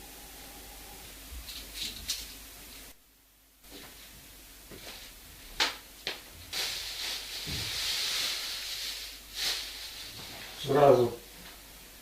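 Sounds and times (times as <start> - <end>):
steady rushing hiss: 6.1 - 12.0.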